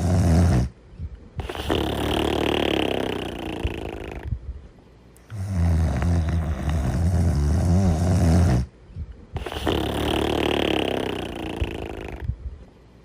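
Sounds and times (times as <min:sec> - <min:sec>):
loud buzzing snore: 0:00.0 - 0:00.8, 0:01.4 - 0:04.3, 0:05.3 - 0:08.7, 0:09.4 - 0:12.3.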